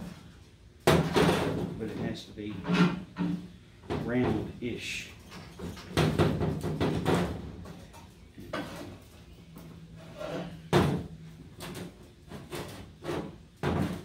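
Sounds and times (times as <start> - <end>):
metal clunks and scraping: 0.0 - 4.5, 5.2 - 14.0.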